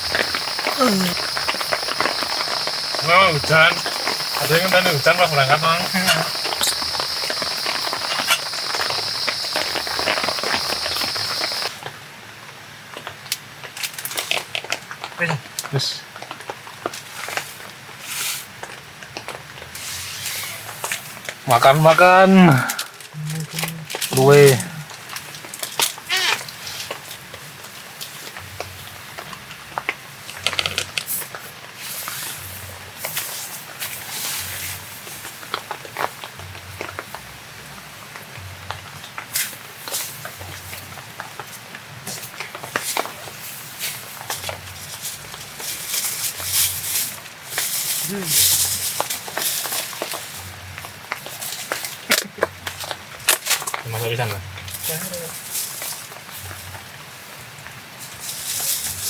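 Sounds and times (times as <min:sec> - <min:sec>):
insects chirring: 0:00.0 - 0:11.8, 0:21.5 - 0:24.9, 0:26.0 - 0:26.5
crackly rustling: 0:00.0 - 0:12.0, 0:13.0 - 0:59.0.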